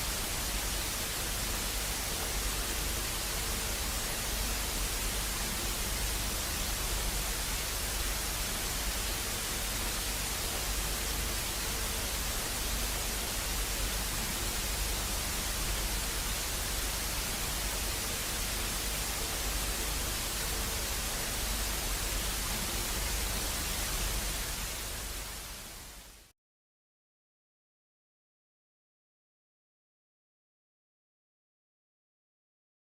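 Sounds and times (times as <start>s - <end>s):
static hiss: 0.0s - 26.3s.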